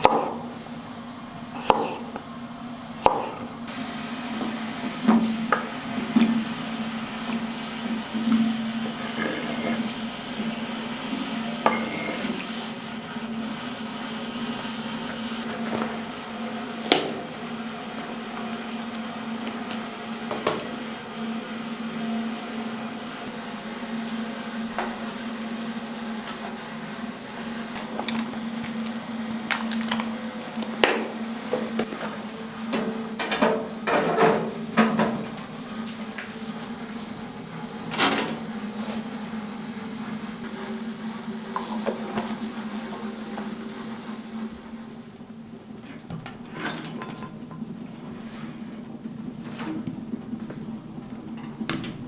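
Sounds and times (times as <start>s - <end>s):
steady low hum: 0.0s - 14.7s.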